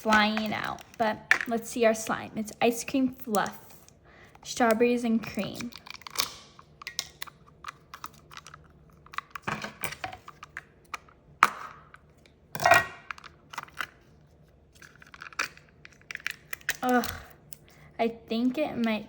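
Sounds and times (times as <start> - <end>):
slime clicks and crinkles: 5.3 - 11.1, 12.1 - 17.7.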